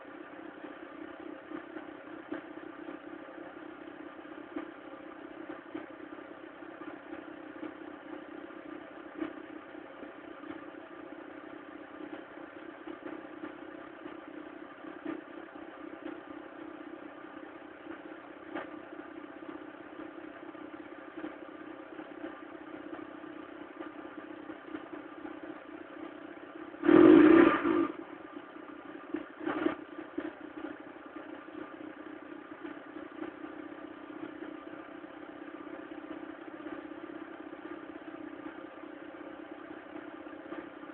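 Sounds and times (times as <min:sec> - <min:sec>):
rough clattering engine idling: 0:00.5 - 0:40.8
loud engine burst: 0:26.8 - 0:28.0.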